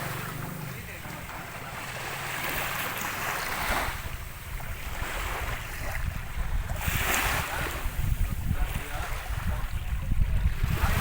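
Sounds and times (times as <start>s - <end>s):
ocean waves washing onto shore: 0.0s - 11.0s
wind rumbling on microphone: 2.4s - 11.0s.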